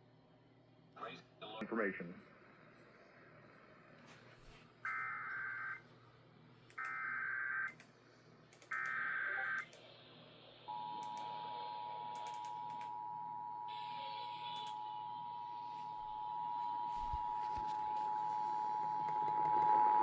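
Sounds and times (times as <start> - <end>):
screeching digital data bursts: 10.7 - 15.6.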